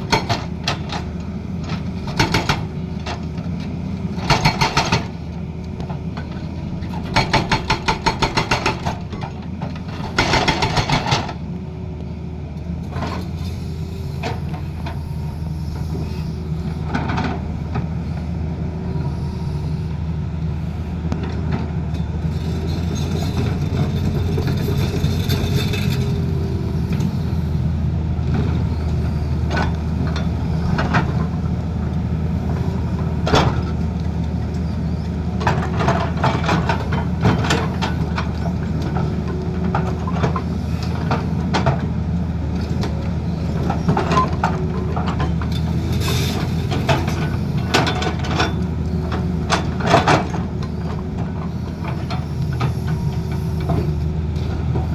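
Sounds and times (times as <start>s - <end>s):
excavator diesel engine: 0.0s - 54.9s
clanks and knocks: 7.0s - 11.4s.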